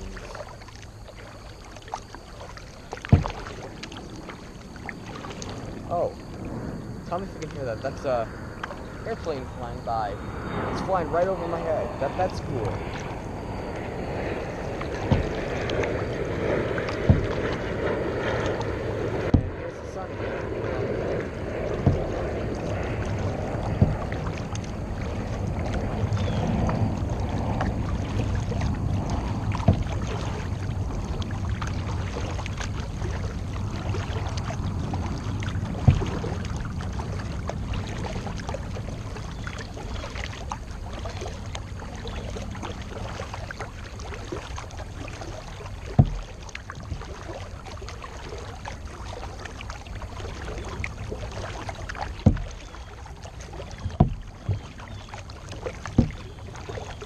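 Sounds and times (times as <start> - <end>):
paddle strokes through water: 0.0 - 57.0
sharp knocks: 3.0 - 3.5, 14.9 - 15.8, 17.0 - 17.6, 19.3 - 19.6, 21.8 - 22.3, 23.8 - 24.2, 46.0 - 46.3, 52.2 - 52.6, 53.8 - 54.7, 55.8 - 56.3.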